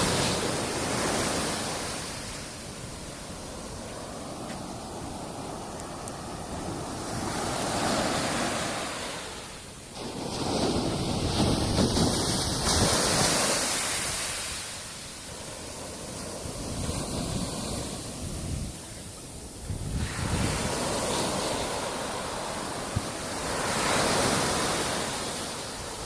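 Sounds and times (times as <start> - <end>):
ocean surf washing onto beach: 0.0 - 26.0
wind buffeting microphone: 10.0 - 14.4, 19.6 - 26.0.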